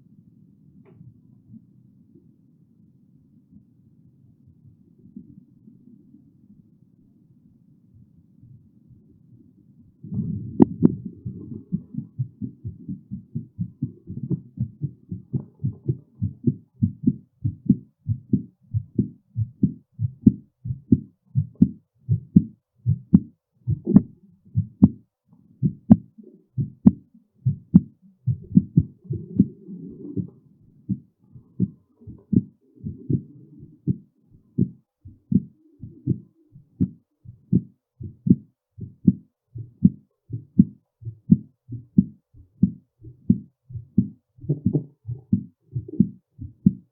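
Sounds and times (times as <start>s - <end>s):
fast heartbeat: 10.0s - 46.9s.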